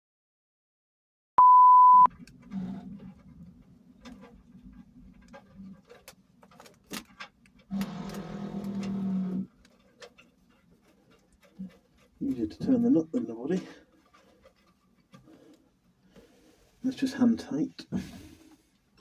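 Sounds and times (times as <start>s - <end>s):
loud pure bleep tone: 1.4s - 2.1s.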